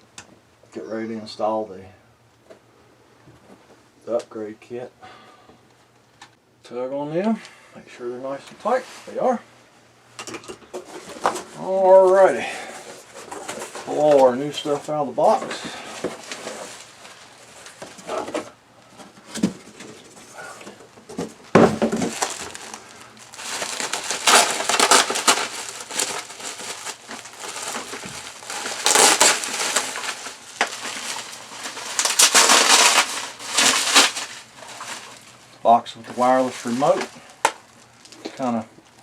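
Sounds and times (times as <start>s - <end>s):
packaging rustling and crinkling: 10.7s - 39.0s.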